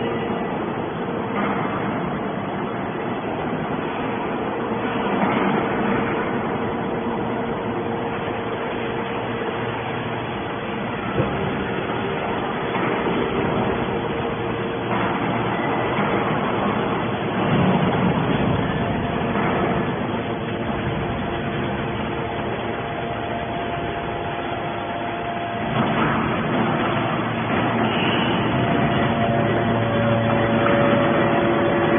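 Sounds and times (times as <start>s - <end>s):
hydraulic baler running: 0.0s - 31.9s
machine knock: 14.8s - 22.2s.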